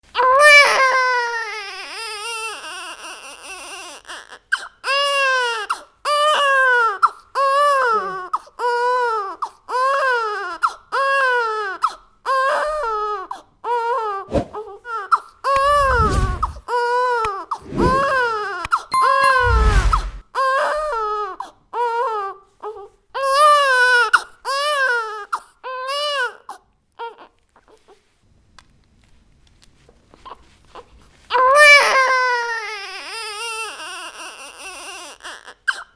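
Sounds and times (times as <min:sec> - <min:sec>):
baby crying: 0:00.2 - 0:27.3, 0:31.3 - 0:35.9
low rumble: 0:15.6 - 0:16.6, 0:17.6 - 0:18.2, 0:19.0 - 0:20.2.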